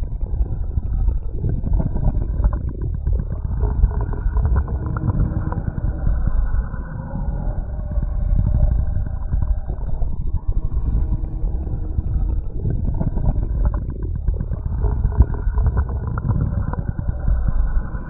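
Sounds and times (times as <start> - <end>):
small clicks and crackles: 0.0 - 6.6, 10.8 - 18.0.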